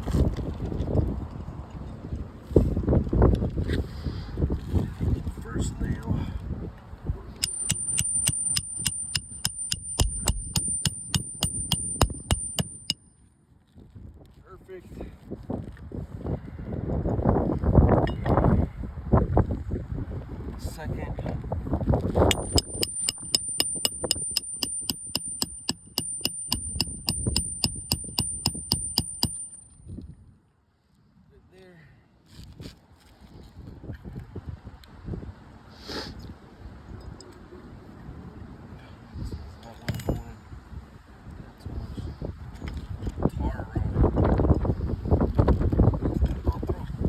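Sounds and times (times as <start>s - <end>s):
hammer tapping nail: 7.4s - 13.0s, 22.3s - 29.8s.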